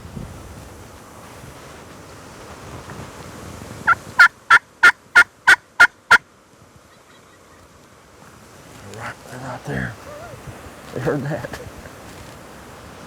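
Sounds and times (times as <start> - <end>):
turkey call hen yelps: 10.0 - 10.4.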